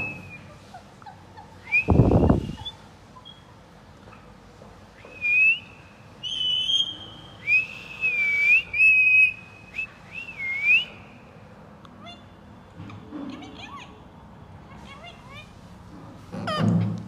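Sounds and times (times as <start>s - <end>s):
parrot whistling: 1.6s - 3.4s, 5.0s - 11.0s.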